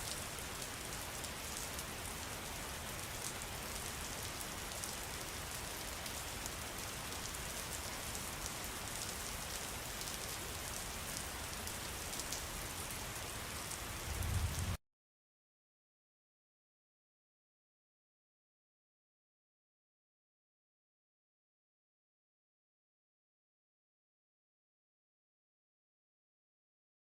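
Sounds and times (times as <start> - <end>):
steady rain falling: 0.0 - 14.8.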